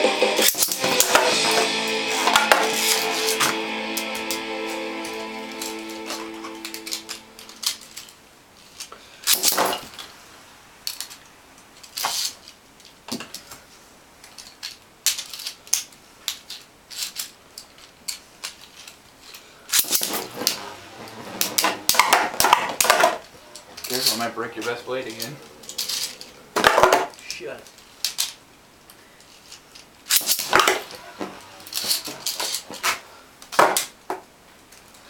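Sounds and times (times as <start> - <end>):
plastic spinning tops clacking: 14.6 - 27.4, 29.4 - 33.9.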